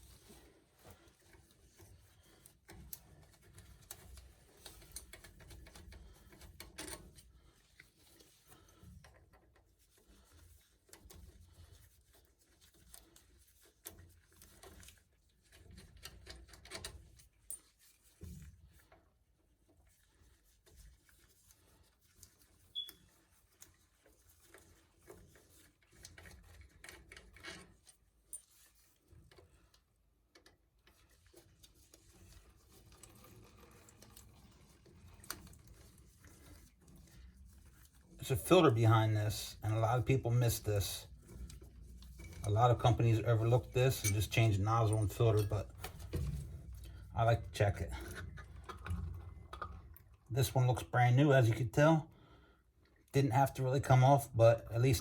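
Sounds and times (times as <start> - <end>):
hand tools clicking and rubbing: 38.2 - 48.8.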